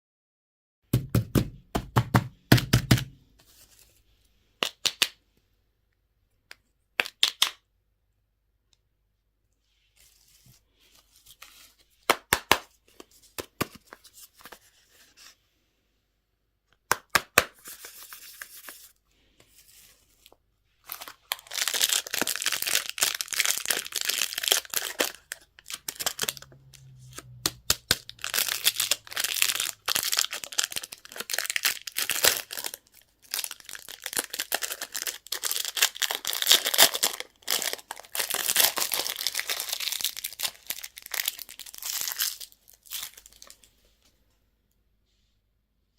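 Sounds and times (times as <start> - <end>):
wrappers crinkling and tearing: 20.8 - 43.7.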